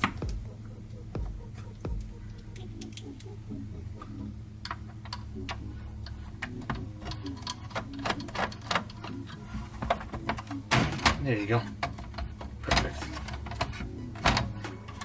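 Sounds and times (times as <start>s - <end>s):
metal parts being handled: 6.0s - 15.0s.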